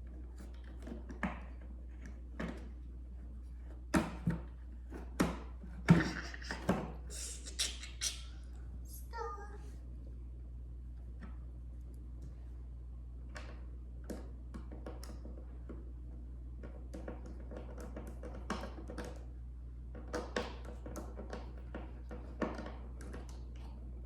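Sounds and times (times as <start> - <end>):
steady low hum: 0.0 - 14.6.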